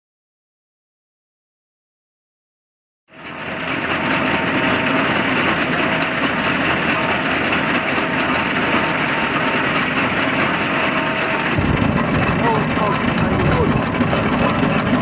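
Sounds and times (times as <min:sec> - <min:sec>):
steam engine mechanical clatter: 0:03.1 - 0:15.0.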